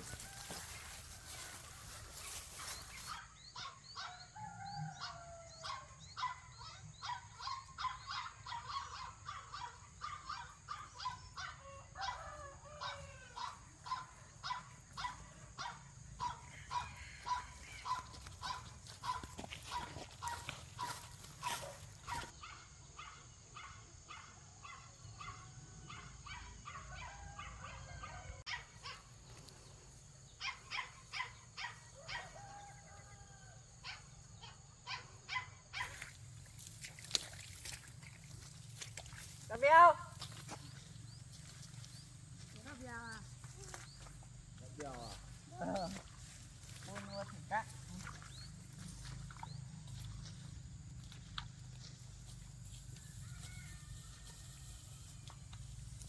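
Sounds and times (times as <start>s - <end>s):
dog barking: 5.0s - 29.0s, 30.4s - 32.7s, 33.8s - 36.0s.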